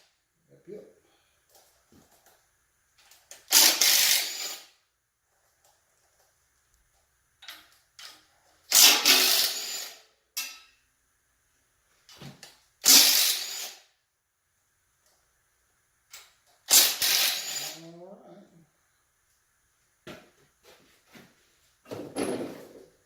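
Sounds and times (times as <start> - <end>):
cordless drill spinning: 3.5 - 4.7, 8.7 - 10.0, 16.7 - 17.8.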